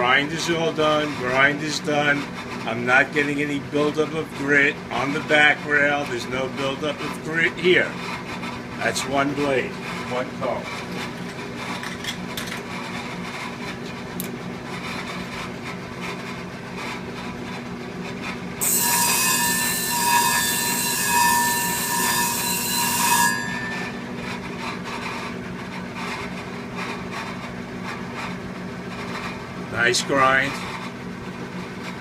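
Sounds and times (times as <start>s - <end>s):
sharpening machine humming: 0.0s - 32.0s
blade grinding on wheel: 14.7s - 31.0s.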